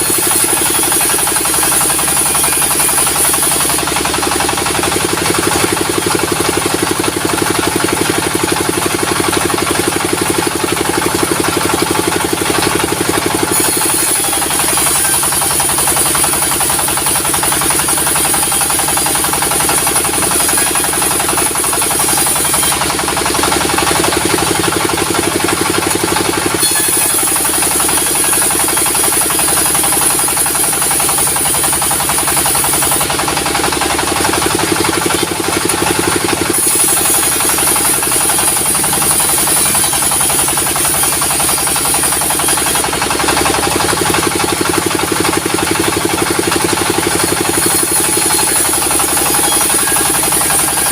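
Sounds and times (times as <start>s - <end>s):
diesel engine throbbing: 0.0s - 50.9s
saw cutting timber: 0.0s - 50.9s.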